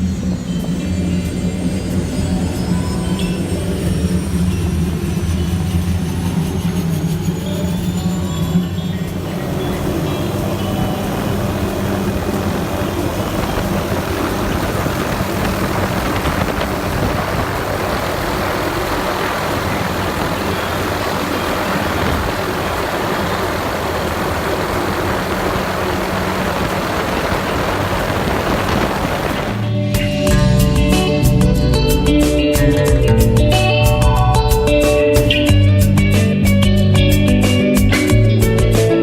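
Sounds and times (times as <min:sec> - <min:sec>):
helicopter rotor and engine drone: 0:00.0 - 0:32.9
wind rushing: 0:09.1 - 0:30.3.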